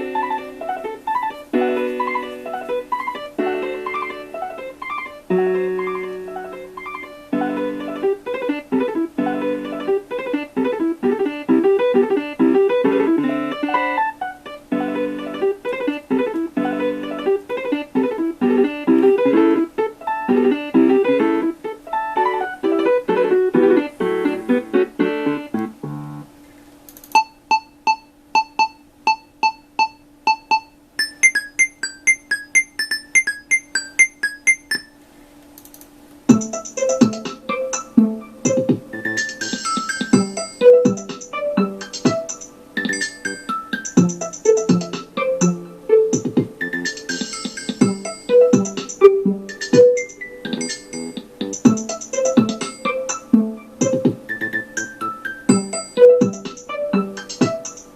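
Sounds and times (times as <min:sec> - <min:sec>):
busy synthesized ringtone melody: 0:00.0 - 0:15.6, 0:27.2 - 0:35.0, 0:36.3 - 0:57.9
short ringtone beeps: 0:27.2 - 0:35.0.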